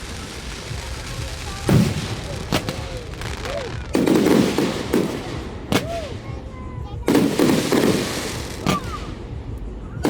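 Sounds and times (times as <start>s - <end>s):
fireworks bursting with bangs: 0.0s - 10.0s
rumbling echo: 0.0s - 10.0s.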